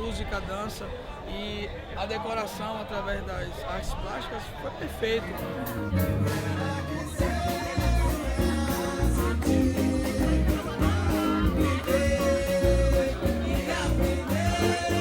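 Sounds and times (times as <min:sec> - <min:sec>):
plucked guitar: 0:05.2 - 0:15.0
pulsing bass beat: 0:05.4 - 0:15.0
person singing: 0:05.5 - 0:15.0.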